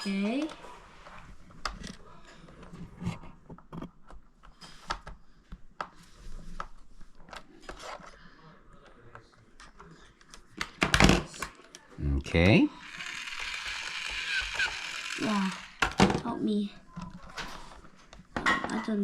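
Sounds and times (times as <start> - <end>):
plastic toy parts clicking: 12.9 - 16.0.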